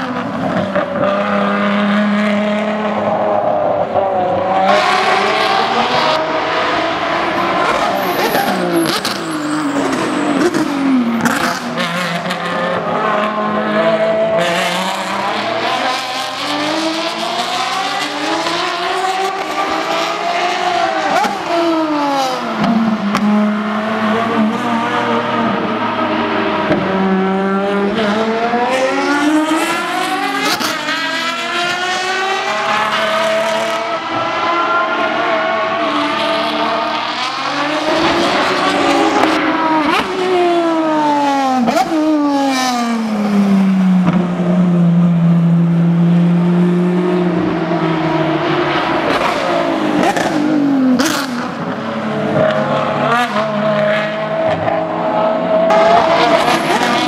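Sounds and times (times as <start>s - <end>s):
race car engines downshifting and accelerating: 0.0s - 57.0s.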